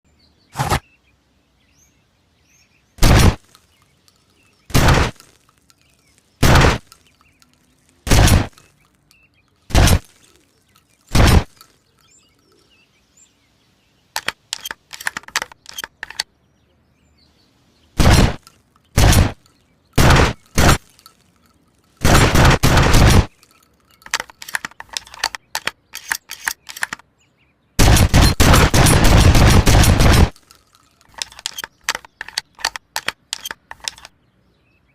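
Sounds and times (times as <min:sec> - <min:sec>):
shotgun blasts: 0:03.0 - 0:03.4, 0:04.7 - 0:05.2, 0:06.4 - 0:06.9, 0:08.0 - 0:08.6, 0:09.7 - 0:10.1, 0:11.1 - 0:11.5, 0:18.0 - 0:18.4, 0:19.0 - 0:19.4, 0:20.0 - 0:20.8, 0:22.0 - 0:23.3, 0:27.8 - 0:30.4
sustained rattling burst: 0:03.0 - 0:08.7, 0:18.0 - 0:27.0, 0:27.8 - 0:34.1
small clicks and clacks: 0:14.2 - 0:16.3, 0:18.1 - 0:27.1, 0:27.8 - 0:34.2.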